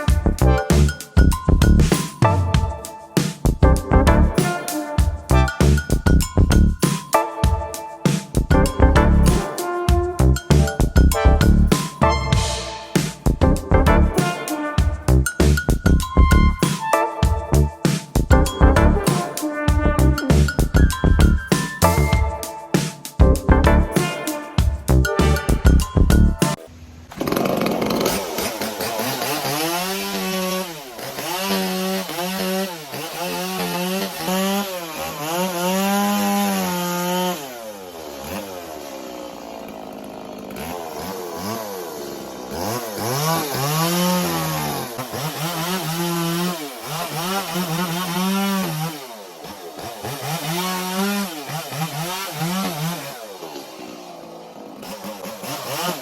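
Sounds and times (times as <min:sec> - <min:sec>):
chainsaw carving wood: 0:27.1 - 0:56.0.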